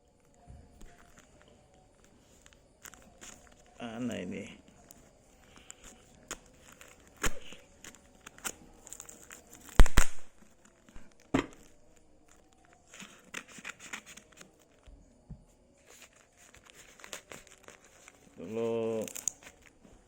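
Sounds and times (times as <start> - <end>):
packaging tearing and crumpling: 0.8 - 3.8, 4.8 - 14.8, 15.9 - 19.8.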